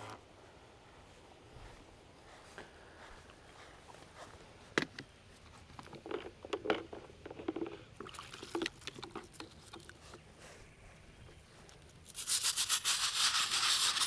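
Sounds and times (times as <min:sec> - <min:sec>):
scrub brush scratching stone: 0:12.0 - 0:14.0.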